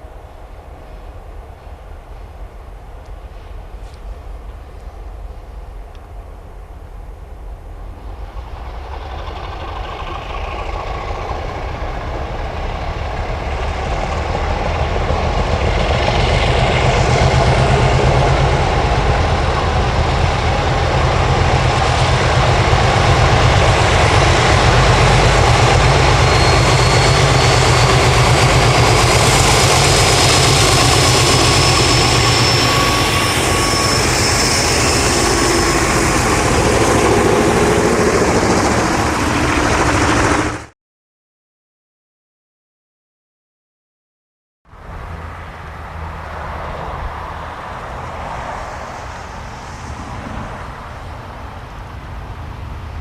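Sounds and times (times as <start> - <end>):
diesel locomotive engine running: 0.0 - 40.7
thin high whine: 25.0 - 40.4.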